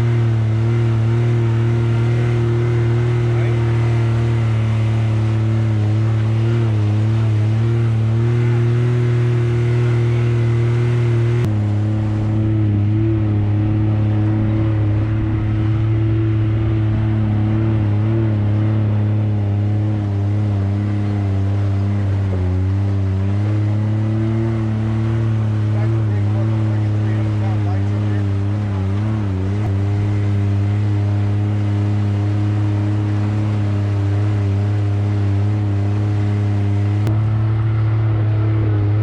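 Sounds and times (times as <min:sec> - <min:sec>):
utility vehicle engine running: 0:00.0 - 0:39.0.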